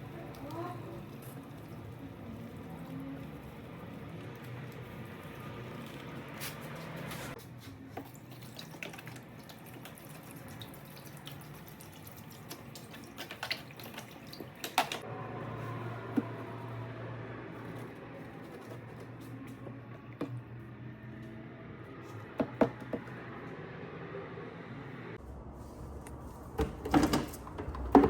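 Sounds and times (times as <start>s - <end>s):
water running and splashing: 0.0s - 15.0s.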